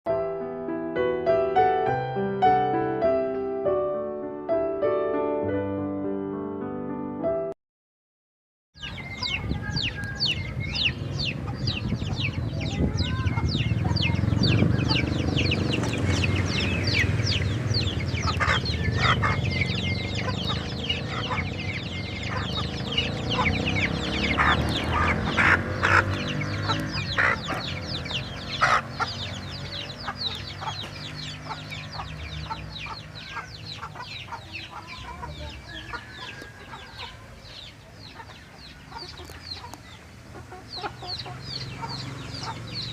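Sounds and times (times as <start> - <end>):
chickens clucking: 8.8 - 42.9.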